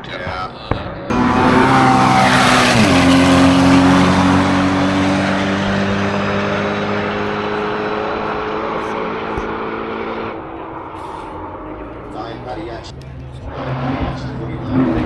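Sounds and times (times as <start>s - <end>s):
race car engine at high revs: 1.0s - 15.0s.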